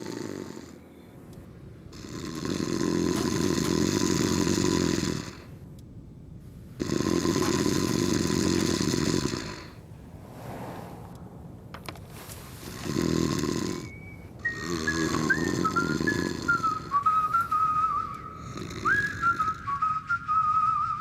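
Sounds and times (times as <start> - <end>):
man snoring: 0.0 - 0.9, 1.9 - 5.5, 6.8 - 9.8, 12.7 - 19.8.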